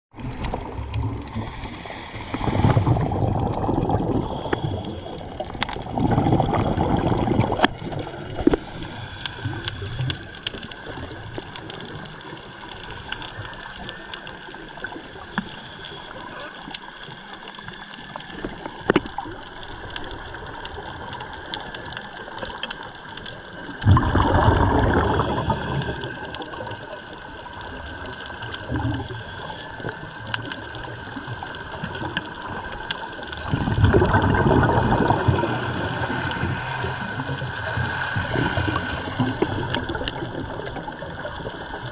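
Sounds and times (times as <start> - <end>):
sea water sloshing: 0.1 - 41.9.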